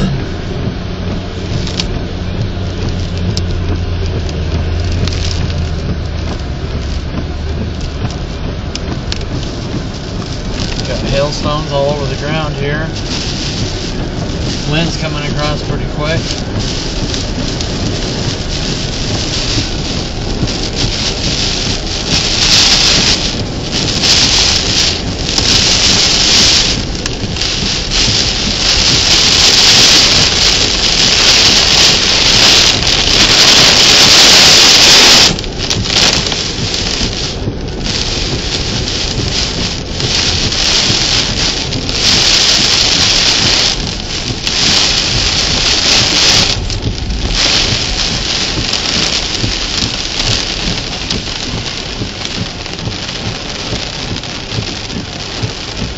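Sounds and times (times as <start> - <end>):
heavy rain: 0.0 - 55.9
strong wind gusts: 0.0 - 55.9.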